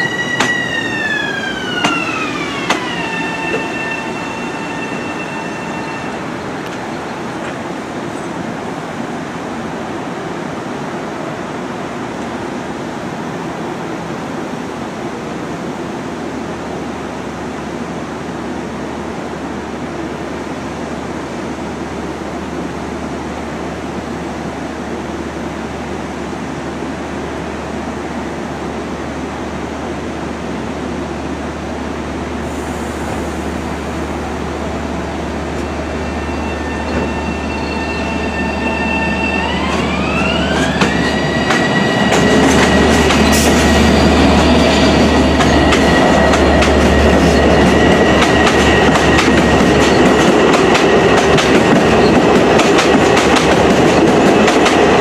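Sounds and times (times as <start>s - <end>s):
train wheels rumbling on rails: 0.0s - 15.5s, 30.2s - 55.0s
high wheel squealing: 35.6s - 51.1s.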